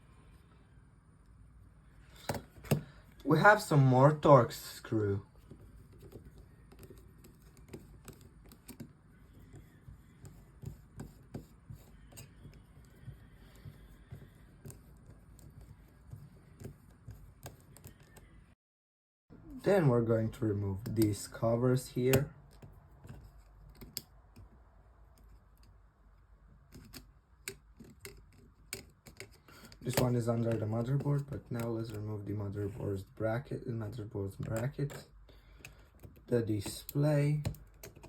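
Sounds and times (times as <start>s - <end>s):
small tools clicking on plastic: 26.7s - 31.7s, 34.5s - 38.0s.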